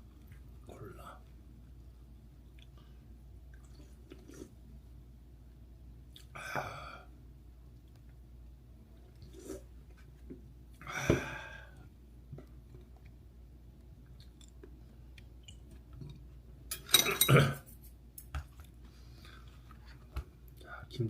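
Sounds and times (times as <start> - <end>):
close chewing and mouth sounds: 2.4 - 4.7, 6.0 - 6.4, 12.4 - 16.5.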